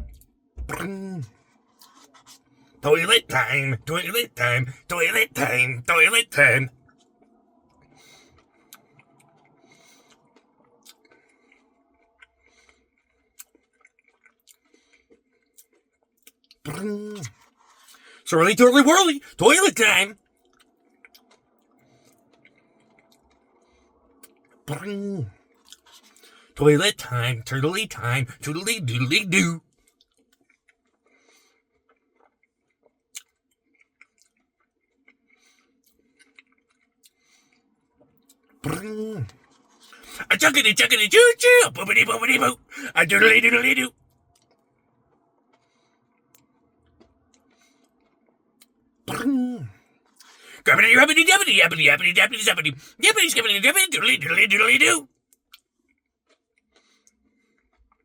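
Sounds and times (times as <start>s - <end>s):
faint chewing: 0.0s - 2.7s, 6.8s - 18.2s, 20.3s - 26.6s, 29.7s - 40.2s, 44.3s - 50.6s, 55.3s - 58.0s.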